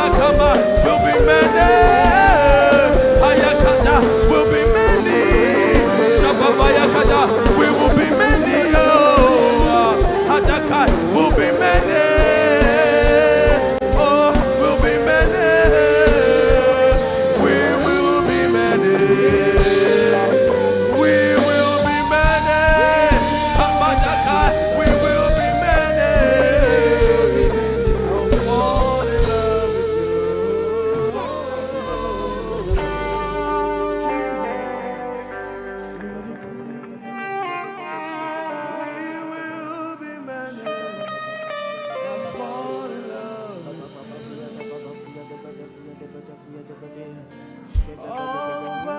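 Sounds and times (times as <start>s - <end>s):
steady low drum beat: 0.0s - 34.5s
sustained keyboard and band tones: 0.0s - 48.9s
wordless sung melody: 0.0s - 48.9s.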